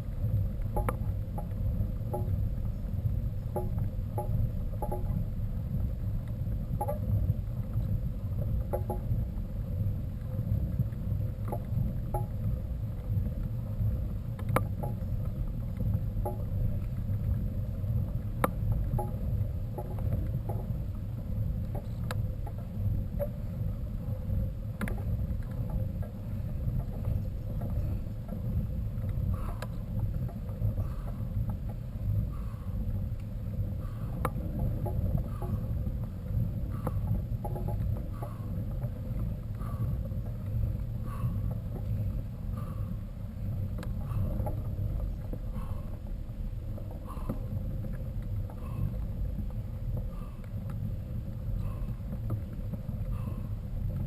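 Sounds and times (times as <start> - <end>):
wind buffeting microphone: 0.0 - 54.0
light clicks and knocks: 0.6 - 9.5, 14.3 - 23.5, 24.8 - 46.1.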